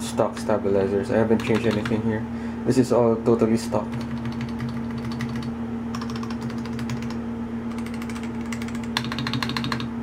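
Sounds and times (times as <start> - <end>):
mechanical keyboard keystroke clacks: 1.4 - 2.0, 3.9 - 9.9.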